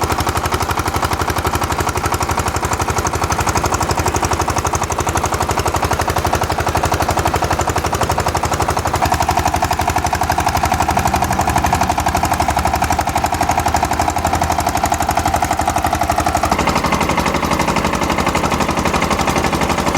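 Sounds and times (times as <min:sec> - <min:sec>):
pump engine running under load: 0:00.0 - 0:19.9
ringing tone: 0:09.5 - 0:14.5.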